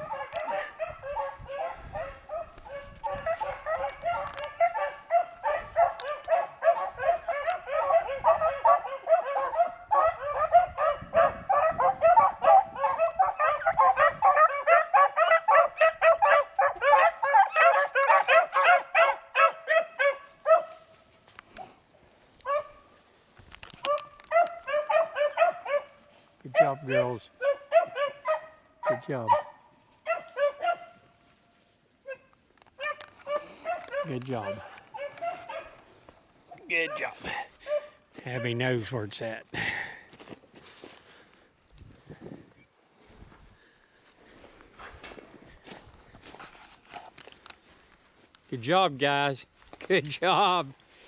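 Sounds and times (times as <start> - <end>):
pack of hounds baying: 0.0 - 21.0, 22.4 - 23.0, 23.7 - 31.4, 32.0 - 38.9.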